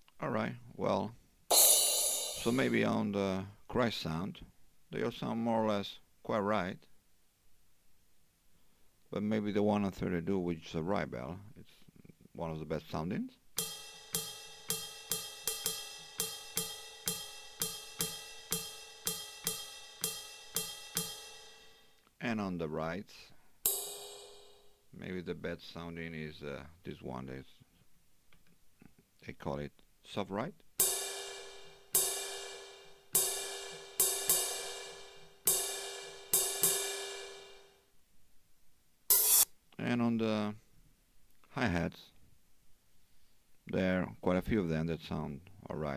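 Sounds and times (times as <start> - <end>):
drum machine ride bell: 1.5 - 2.9
ride cymbal hits ringing: 1.5 - 2.9, 23.7 - 24.7, 30.8 - 37.7, 39.1 - 39.5.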